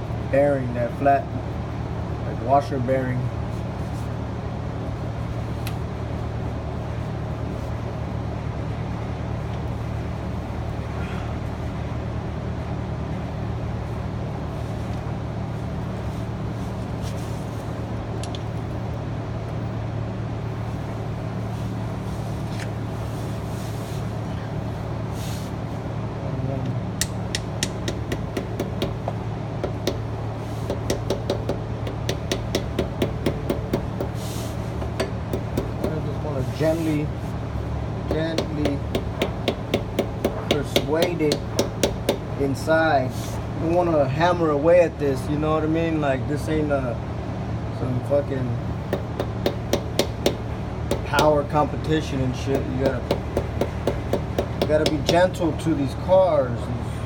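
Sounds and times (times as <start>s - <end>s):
low mechanical hum: 0.0s - 57.0s
hammer tapping metal: 27.0s - 30.1s, 30.7s - 34.2s, 34.8s - 36.0s, 38.1s - 42.3s, 48.9s - 51.4s, 52.5s - 55.2s.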